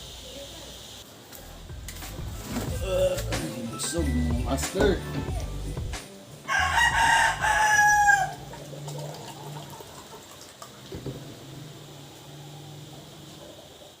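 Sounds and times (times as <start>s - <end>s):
rooster crowing: 6.4s - 10.2s, 11.7s - 14.0s.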